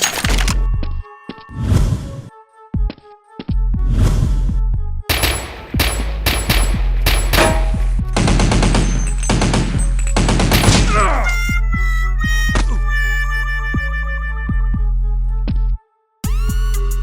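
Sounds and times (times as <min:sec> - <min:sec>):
background music with bass: 0:02.8 - 0:17.0
machine-gun fire: 0:05.1 - 0:11.2.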